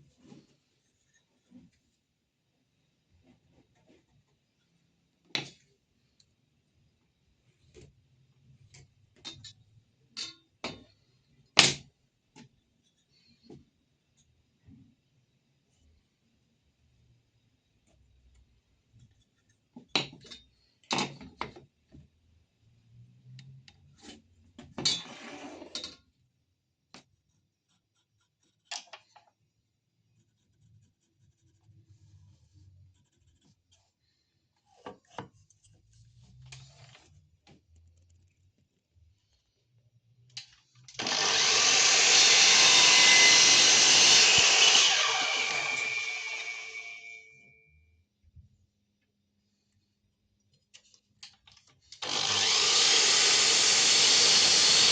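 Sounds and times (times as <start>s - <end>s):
knocks and clicks of wood and tools: 19.5s - 22.1s
power tool running loudly: 41.0s - 47.2s, 52.0s - 54.9s.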